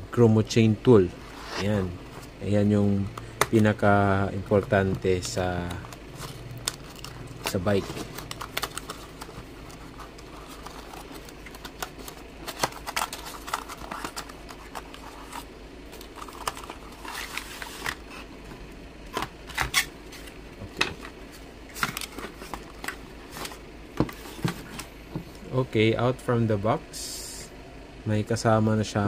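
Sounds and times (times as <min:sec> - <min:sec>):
packaging rustling: 0:03.5 - 0:20.4, 0:21.0 - 0:24.9.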